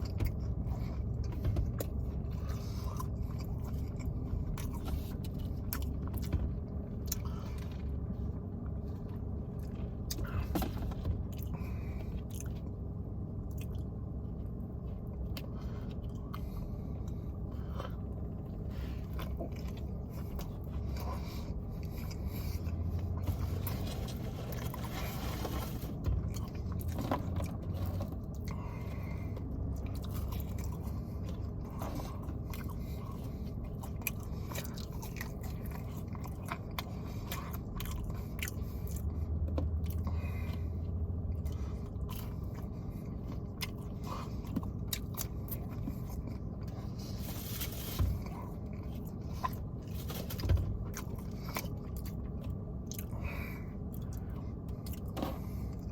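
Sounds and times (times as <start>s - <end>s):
person biting and chewing food: 0.0s - 55.9s
steady low hum: 0.0s - 55.9s.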